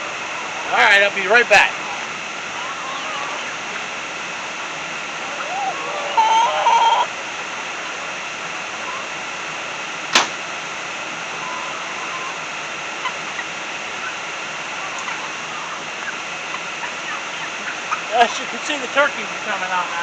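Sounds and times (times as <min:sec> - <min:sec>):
steady rushing hiss: 0:00.0 - 0:20.0
sharp click: 0:10.1 - 0:10.4.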